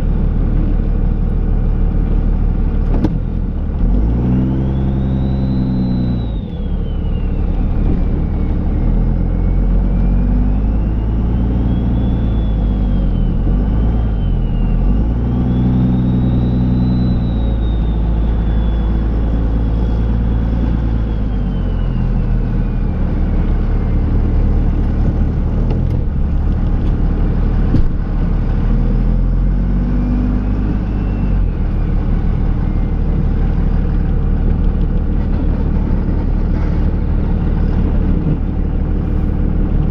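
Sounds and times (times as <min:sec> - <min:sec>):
diesel engine revving: 0:00.0 - 0:39.9
turbo whistle: 0:04.0 - 0:24.7, 0:28.6 - 0:34.4.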